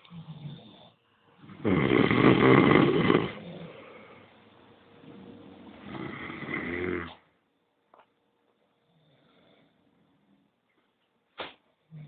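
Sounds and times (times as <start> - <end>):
person snoring: 0.1 - 4.2, 5.8 - 7.2.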